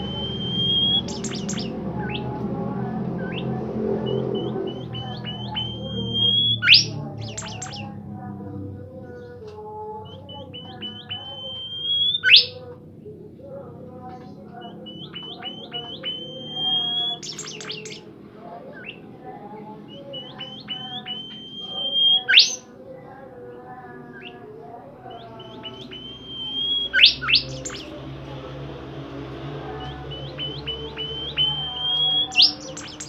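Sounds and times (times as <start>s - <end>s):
songbird chirping and whistling: 0.0s - 2.5s, 3.2s - 8.0s, 10.1s - 12.6s, 14.4s - 18.1s, 19.9s - 22.7s, 24.1s - 33.0s.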